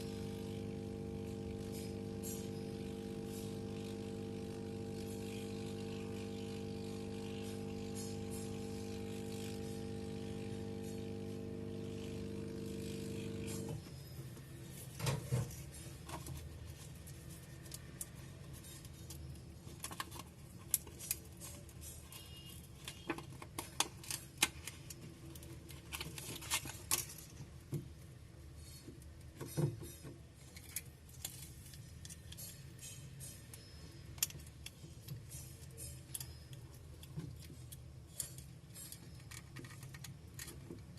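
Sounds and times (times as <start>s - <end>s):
steady hum: 0.0s - 14.2s.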